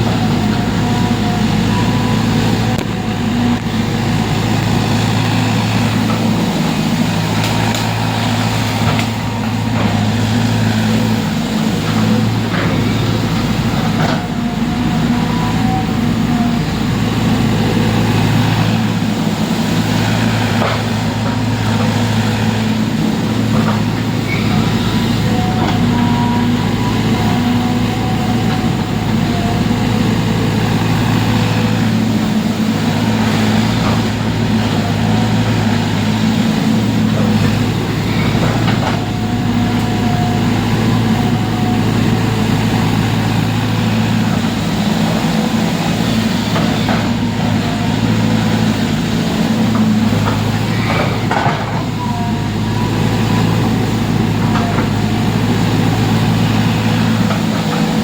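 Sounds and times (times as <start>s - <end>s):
heavy engine running: 0.0s - 58.0s.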